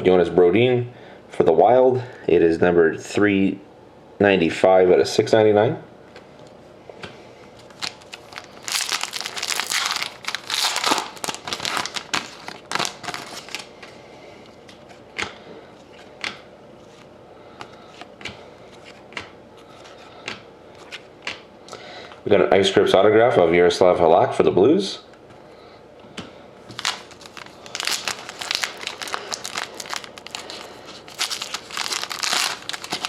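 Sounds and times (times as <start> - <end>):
wrapper crinkling and tearing: 7.7 - 13.7, 26.7 - 33.0.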